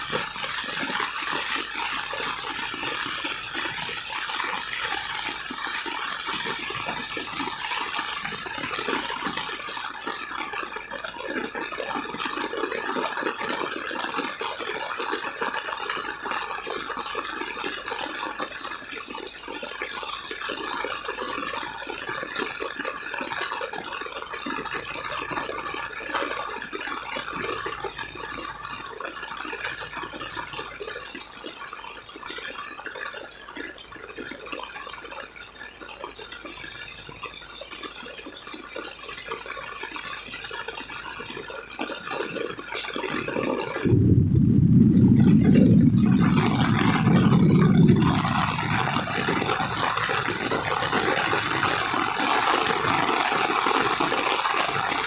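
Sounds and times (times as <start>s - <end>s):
heavy rain pouring: 0.0s - 26.2s, 40.8s - 55.0s
running water: 0.0s - 32.5s, 36.2s - 55.0s.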